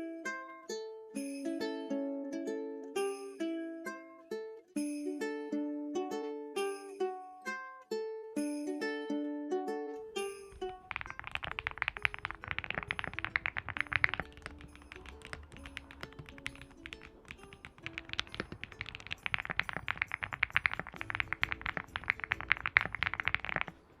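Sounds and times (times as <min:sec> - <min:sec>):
plucked string background music: 0:00.0 - 0:24.0
mechanical keyboard typing: 0:10.6 - 0:23.8.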